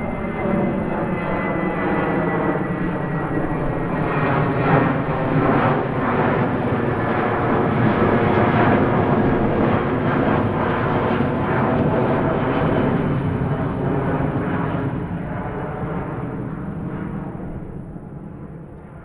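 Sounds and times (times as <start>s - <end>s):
jet engines humming: 0.0s - 19.0s.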